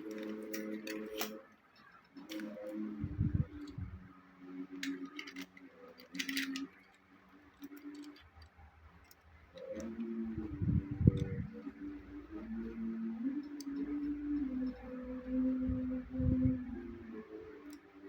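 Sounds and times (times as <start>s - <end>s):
toy package being handled: 0.0s - 1.4s, 4.8s - 7.0s
steady low tone: 2.3s - 5.1s, 9.4s - 18.0s.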